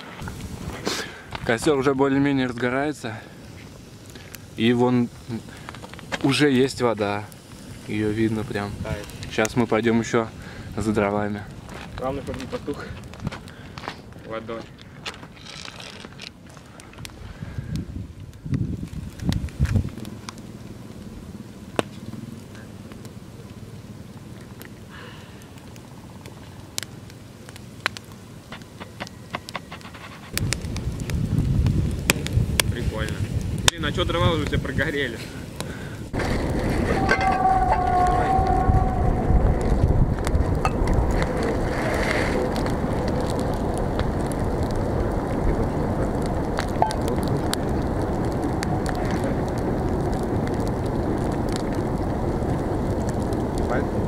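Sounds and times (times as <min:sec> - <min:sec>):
campfire crackling and popping: 0:00.0 - 0:54.0
low rumble: 0:36.0 - 0:54.0.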